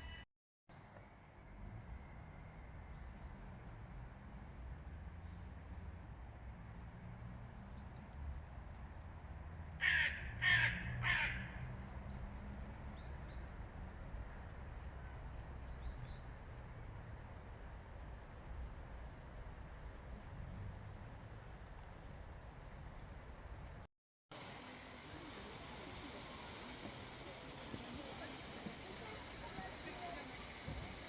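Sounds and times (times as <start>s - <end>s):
bird giving harsh calls: 9.8s - 11.6s.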